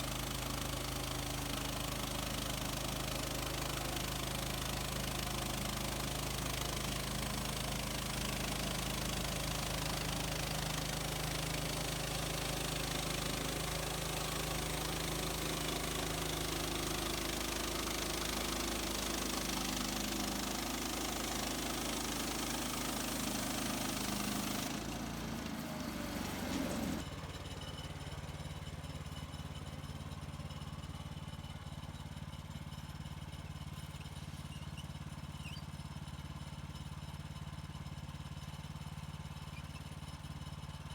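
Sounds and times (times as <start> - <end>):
gas engine running hard: 4.0 - 27.0.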